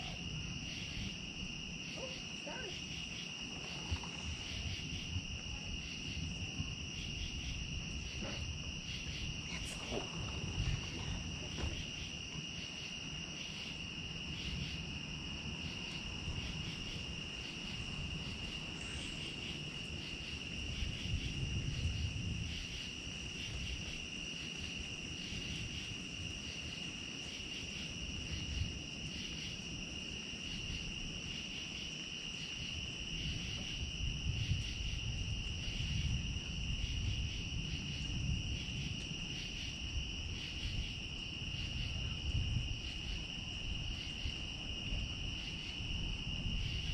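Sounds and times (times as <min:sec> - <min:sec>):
crickets trilling: 0:00.0 - 0:46.9
low rumbling noise: 0:02.8 - 0:22.7.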